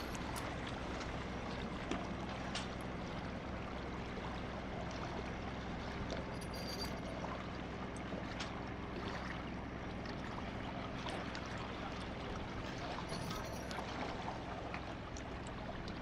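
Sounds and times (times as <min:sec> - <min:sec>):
engine running steadily: 0:00.0 - 0:16.0
moving water: 0:00.0 - 0:16.0
brief high clinks: 0:06.4 - 0:07.1, 0:13.1 - 0:13.8.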